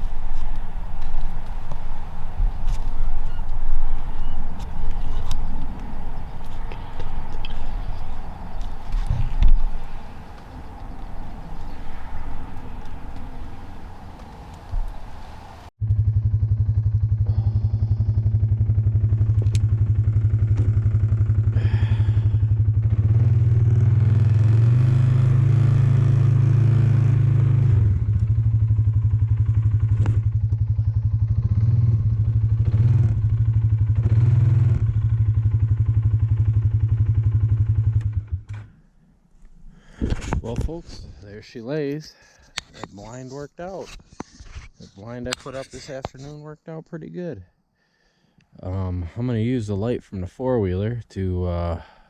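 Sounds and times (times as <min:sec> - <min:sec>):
atv engine running: 0:00.0 - 0:38.9.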